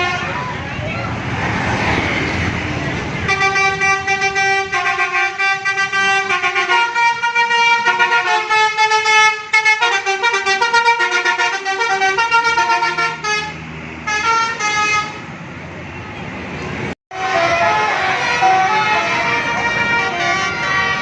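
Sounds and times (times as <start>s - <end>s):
musical air horn playing a tune: 3.3s - 15.1s, 17.1s - 21.0s.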